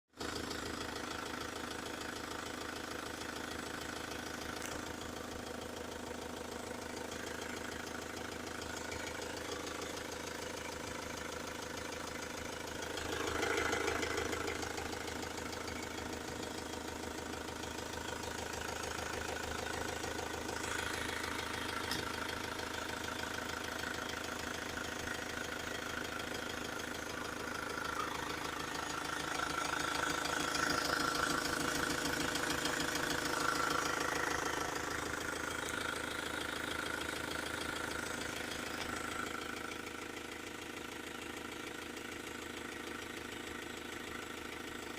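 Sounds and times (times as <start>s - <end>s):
van engine knocking: 0.1s - 44.9s.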